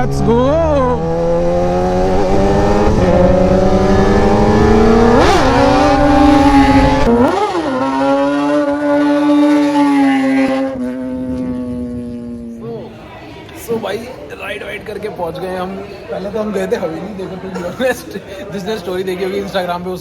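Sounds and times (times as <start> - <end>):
motorcycle engine accelerating: 0.0 - 12.7.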